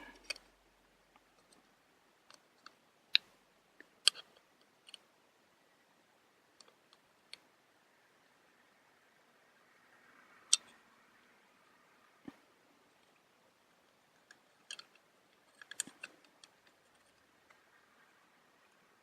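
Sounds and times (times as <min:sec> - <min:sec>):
clicks and taps of small parts: 0:04.0 - 0:05.0, 0:14.2 - 0:17.6.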